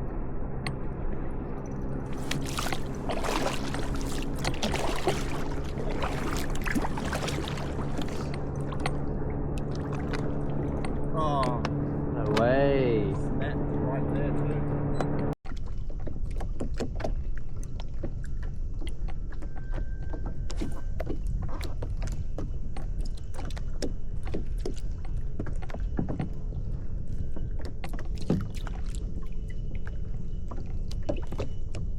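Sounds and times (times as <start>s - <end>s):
steady low rumble: 0.0s - 15.4s
water splashing around a kayak: 2.0s - 11.7s, 15.5s - 31.9s.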